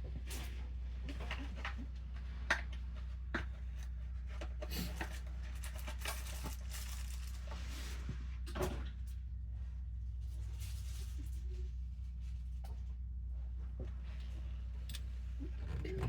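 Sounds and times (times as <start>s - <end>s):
steady low hum: 9.0s - 16.0s.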